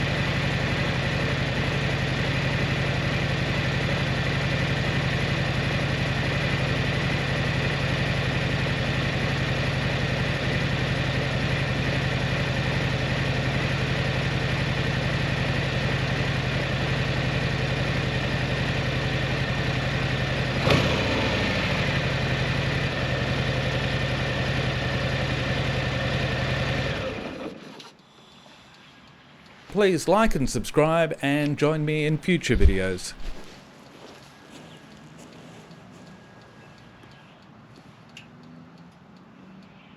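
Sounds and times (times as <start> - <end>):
motorcycle engine idling: 0.0 - 26.9.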